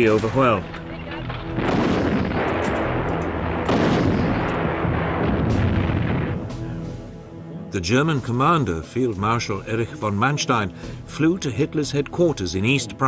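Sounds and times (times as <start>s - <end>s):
gunfire: 1.3s - 6.4s
artillery fire: 1.3s - 6.5s.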